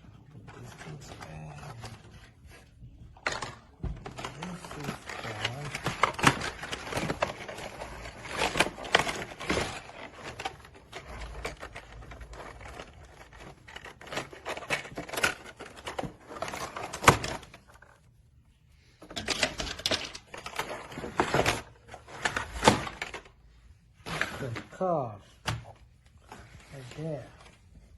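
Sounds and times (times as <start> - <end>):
packaging rustling: 3.2 - 18.0.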